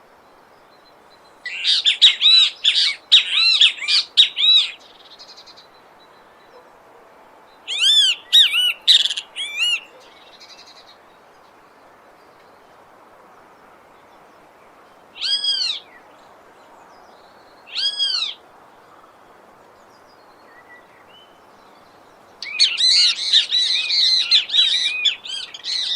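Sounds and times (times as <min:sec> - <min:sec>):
faint background hiss: 0:00.0 - 0:25.9
flycatcher calling: 0:01.4 - 0:05.7, 0:07.7 - 0:10.8, 0:22.4 - 0:25.9.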